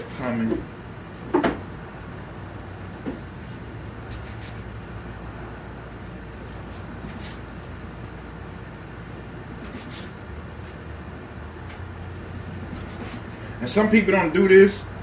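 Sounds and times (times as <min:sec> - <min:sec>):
steady low hum: 0:00.0 - 0:15.0
knife slicing on cutting board: 0:04.1 - 0:04.6, 0:09.6 - 0:10.2.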